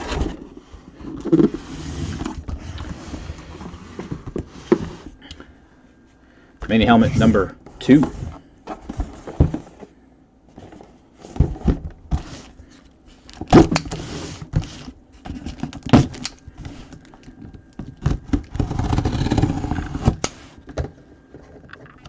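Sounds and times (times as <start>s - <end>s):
cardboard box being opened: 18.2s - 20.2s.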